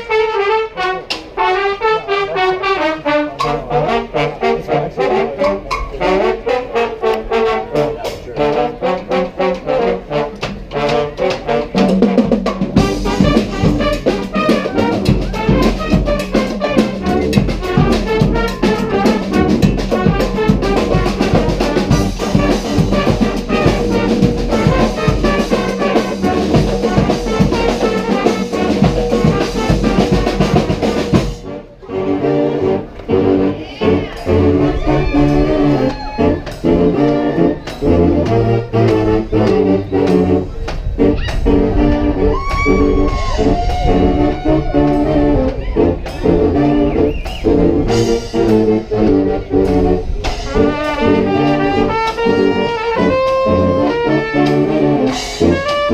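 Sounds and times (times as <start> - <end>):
brass band playing: 0.0 - 55.9
marching drum beat: 10.4 - 31.5.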